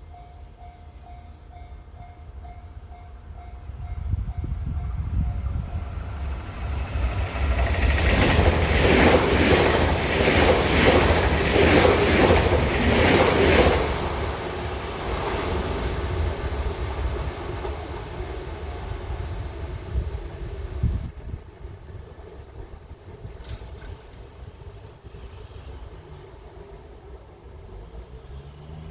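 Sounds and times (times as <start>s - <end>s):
electric train passing at speed: 0.0s - 28.9s
wheels clattering over rail joints: 23.2s - 26.8s.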